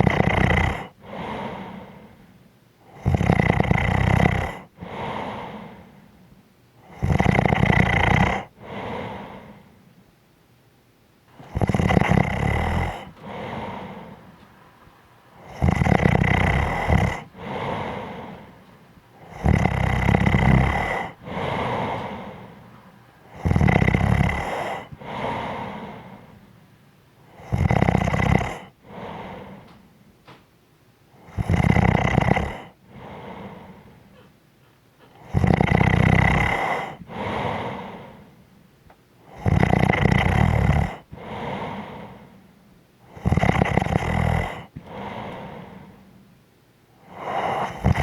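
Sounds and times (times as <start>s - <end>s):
person snoring: 0.0s - 2.3s, 2.9s - 6.1s, 6.8s - 9.8s, 11.4s - 14.3s, 15.3s - 26.4s, 27.3s - 29.8s, 31.2s - 34.2s, 35.1s - 38.4s, 39.2s - 42.4s, 43.1s - 46.1s, 47.0s - 48.0s.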